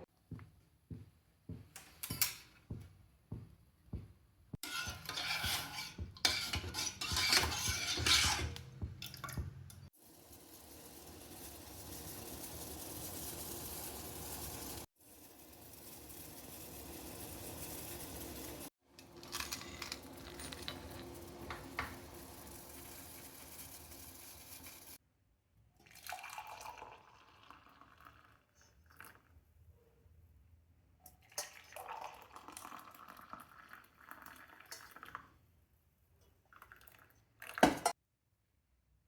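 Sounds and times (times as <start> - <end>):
hot liquid pouring and splashing: 4.6 - 25.0, 25.8 - 29.2, 31.2 - 35.4.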